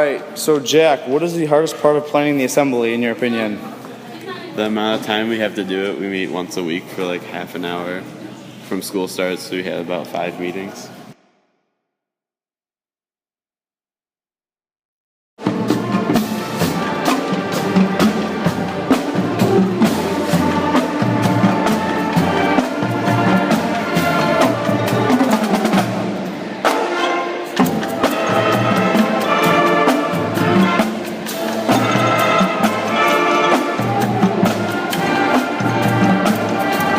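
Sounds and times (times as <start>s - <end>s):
brass band with drums: 15.4s - 36.9s.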